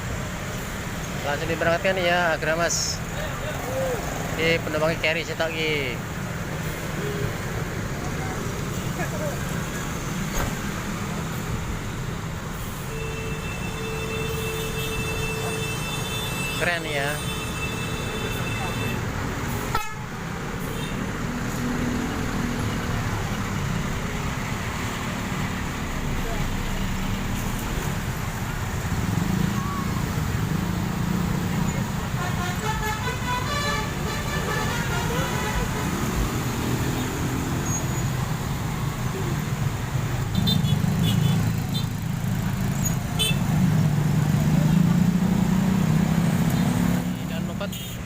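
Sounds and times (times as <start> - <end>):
road traffic noise: 0.0 - 48.0
diesel bus engine rumble: 19.0 - 40.3.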